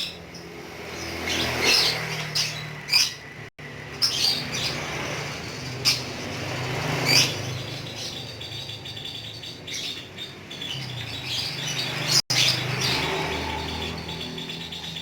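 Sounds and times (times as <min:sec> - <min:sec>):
lovebird chirping: 0:03.9 - 0:15.0.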